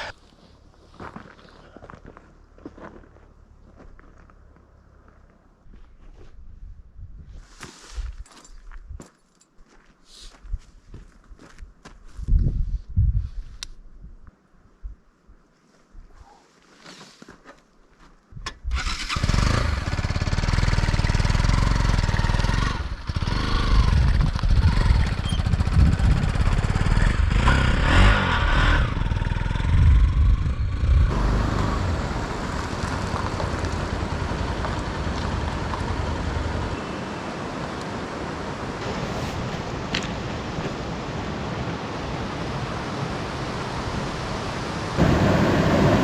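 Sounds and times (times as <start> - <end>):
motorcycle engine revving: 18.8 - 36.8.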